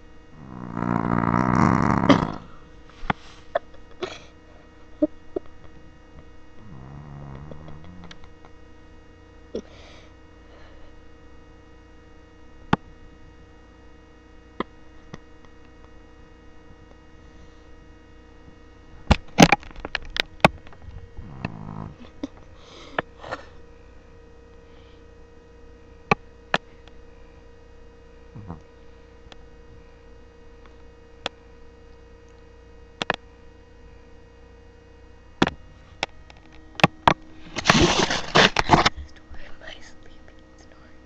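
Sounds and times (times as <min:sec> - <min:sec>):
electrical hum: 0:00.0 - 0:41.0
dog snoring: 0:00.3 - 0:02.6, 0:06.6 - 0:08.1, 0:21.2 - 0:22.1, 0:28.3 - 0:28.6.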